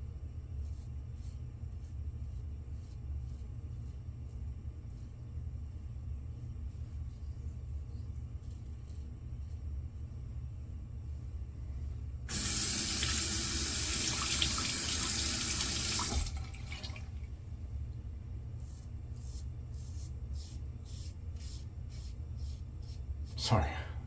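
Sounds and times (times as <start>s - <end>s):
tap running into a sink: 12.3s - 17.2s.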